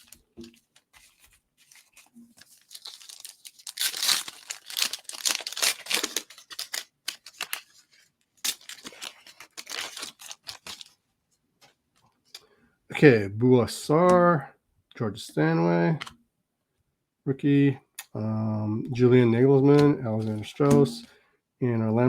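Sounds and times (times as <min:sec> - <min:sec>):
wrapper being torn and crinkled: 0:00.0 - 0:11.0.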